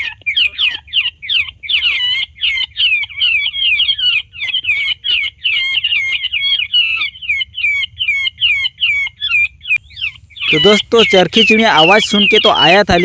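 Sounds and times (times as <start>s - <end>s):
bird calls from loudspeaker: 10.0s - 13.0s.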